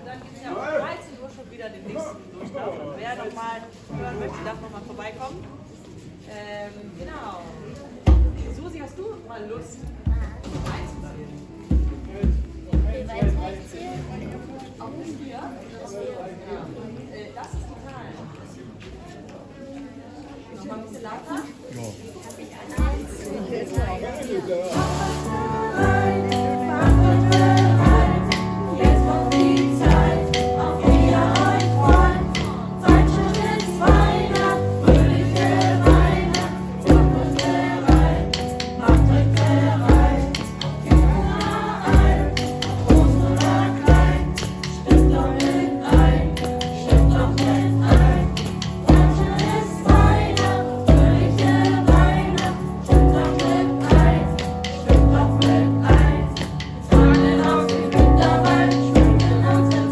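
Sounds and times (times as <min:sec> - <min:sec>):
accompaniment with steady beat: 0:10.1 - 0:14.0, 0:22.8 - 0:59.9
group singing in chorus: 0:24.7 - 0:59.9.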